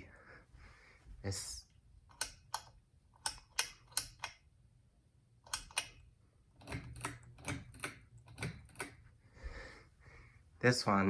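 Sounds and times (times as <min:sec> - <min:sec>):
ceiling fan sharp clicks: 0:02.1 - 0:04.5, 0:05.4 - 0:09.1.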